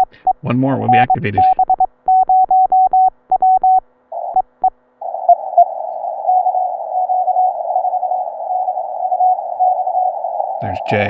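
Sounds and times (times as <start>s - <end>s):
morse sidetone beeps: 0.0s - 4.7s
faint morse code beeps: 0.0s - 10.2s.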